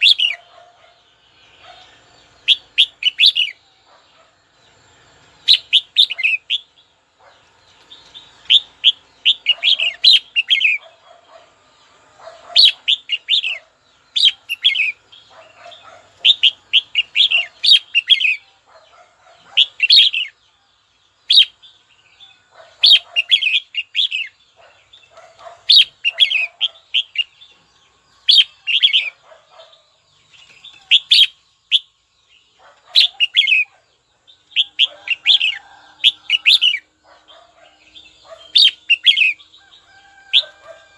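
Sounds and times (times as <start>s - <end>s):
bulbul singing: 0.0s - 40.9s.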